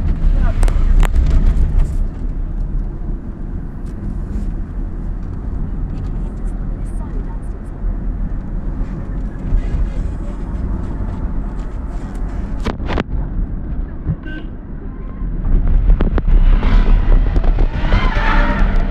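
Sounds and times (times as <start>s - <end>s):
vehicle rumble: 0.0s - 18.9s.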